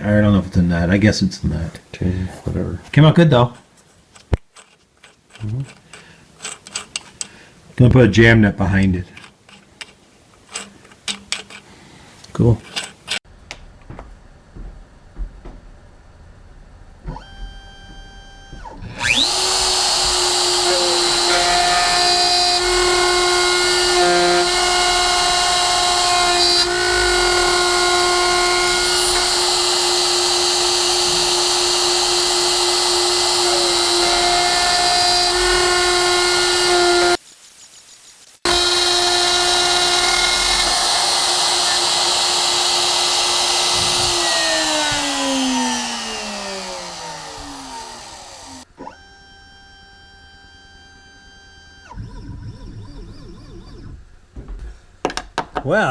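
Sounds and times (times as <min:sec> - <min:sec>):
machine tool motor running: 0:17.1 - 0:37.2, 0:38.3 - 0:50.7
metal cutting noise: 0:18.6 - 0:48.7.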